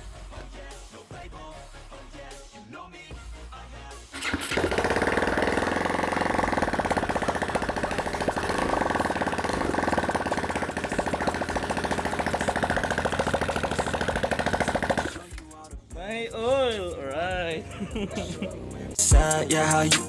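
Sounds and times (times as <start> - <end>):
motorcycle engine idling loud: 4.2 - 17.8.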